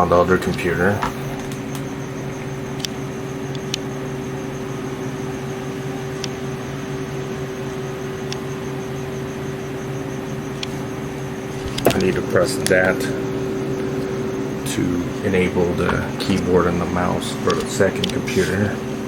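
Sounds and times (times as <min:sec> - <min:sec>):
computer fan hum: 0:00.0 - 0:19.0
faint high whine: 0:00.0 - 0:19.0
light clicks: 0:00.5 - 0:03.9, 0:06.2 - 0:06.4, 0:17.4 - 0:18.2.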